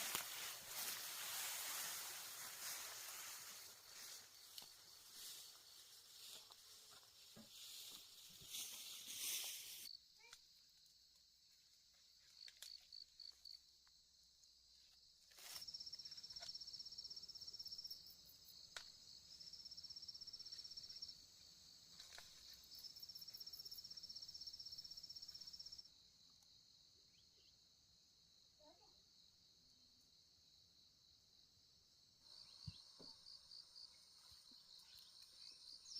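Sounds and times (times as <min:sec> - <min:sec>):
high hiss of insects: 0:00.0 - 0:11.5, 0:14.9 - 0:27.5, 0:32.0 - 0:35.9
insects trilling: 0:32.2 - 0:35.9.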